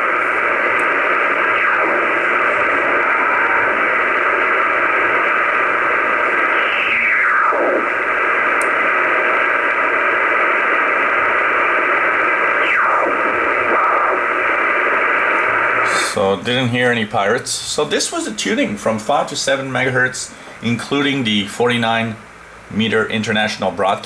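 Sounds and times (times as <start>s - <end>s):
falling radio whistles: 0.0s - 16.2s
shortwave radio static hiss: 0.0s - 24.0s.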